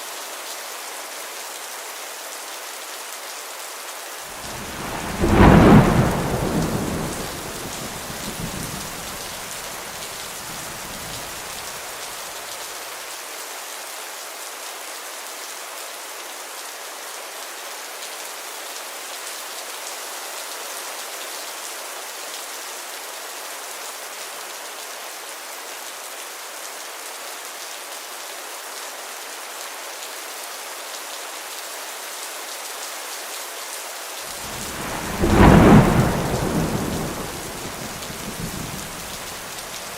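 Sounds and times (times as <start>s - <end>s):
heavy rain falling: 0.1s - 14.9s, 15.5s - 39.9s
thunder rumbling: 4.4s - 11.7s, 34.4s - 39.9s.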